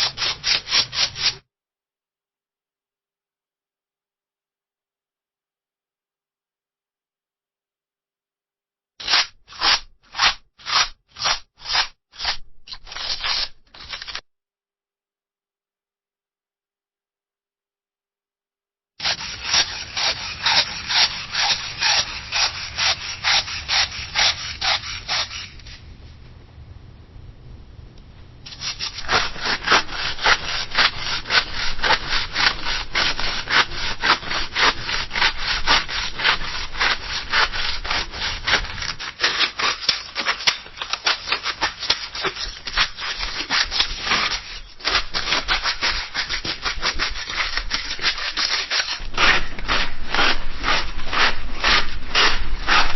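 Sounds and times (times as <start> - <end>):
scissors cutting paper: 9.0 - 14.2, 19.0 - 25.8, 28.5 - 52.9.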